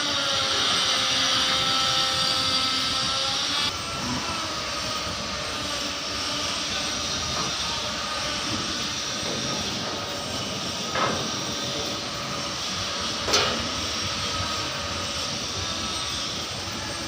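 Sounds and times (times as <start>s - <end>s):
industrial machinery noise: 0.0s - 17.0s.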